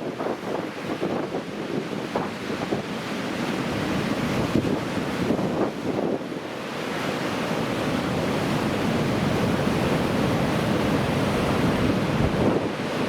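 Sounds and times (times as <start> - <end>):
wind blowing across microphone: 0.0 - 13.0
storm surf crashing: 7.8 - 13.0.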